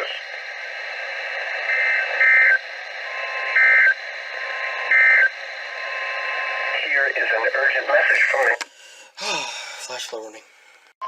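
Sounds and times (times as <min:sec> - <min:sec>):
radio hiss: 0:00.0 - 0:08.8.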